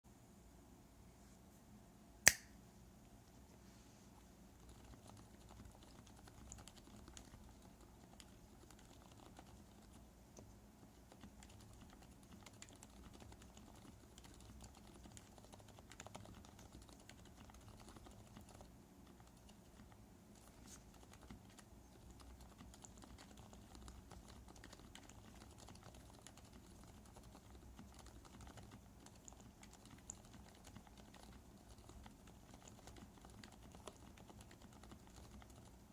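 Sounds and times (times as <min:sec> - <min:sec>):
sharp loud click: 0:02.2 - 0:02.6
muted mechanical keyboard keystrokes: 0:11.1 - 0:18.7, 0:21.0 - 0:35.8.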